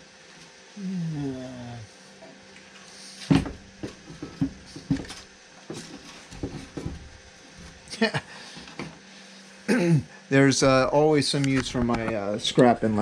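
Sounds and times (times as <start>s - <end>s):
low falling hum: 0.8s - 2.4s.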